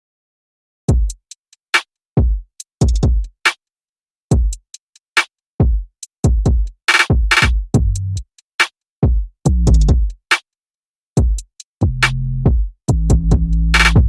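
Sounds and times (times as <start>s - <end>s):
drum machine beats: 0.9s - 1.4s, 2.2s - 3.5s, 4.3s - 4.8s, 5.6s - 10.4s, 11.2s - 14.0s.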